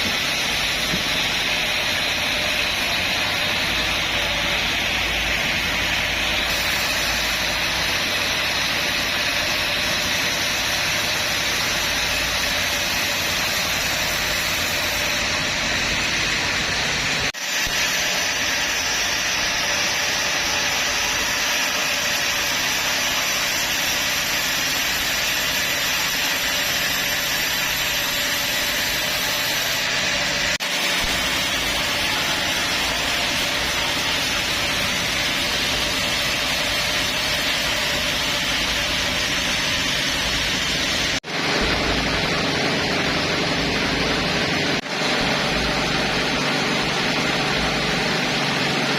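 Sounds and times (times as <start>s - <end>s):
sawmill machinery running: 0.0s - 48.9s.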